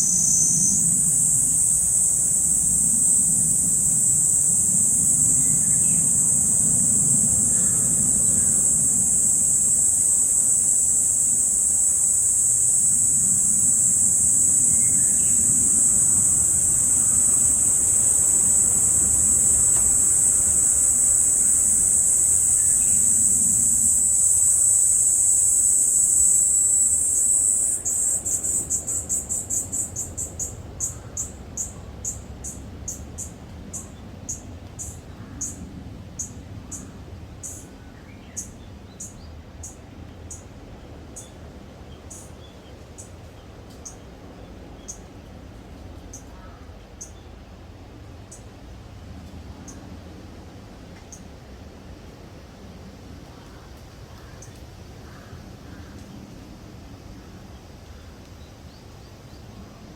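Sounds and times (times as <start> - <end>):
cicada singing: 0.0 - 40.5, 41.1 - 43.2, 43.8 - 45.1, 46.1 - 47.3.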